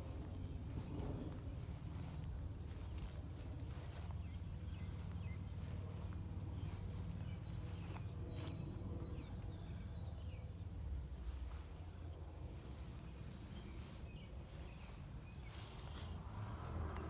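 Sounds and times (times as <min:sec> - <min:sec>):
small birds chirping: 0:00.0 - 0:17.0
steady low rumble: 0:00.0 - 0:17.0.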